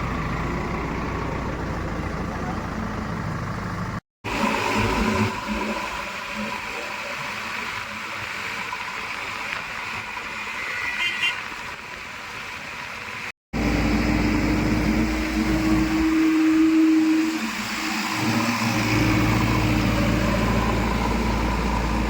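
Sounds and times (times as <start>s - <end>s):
diesel engine running: 0.0s - 6.6s, 13.6s - 22.0s.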